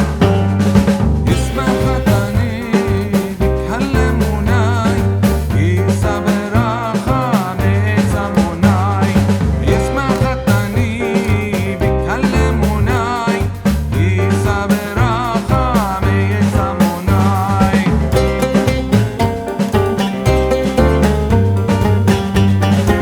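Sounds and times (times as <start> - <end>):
upbeat music with drums: 0.0 - 23.0.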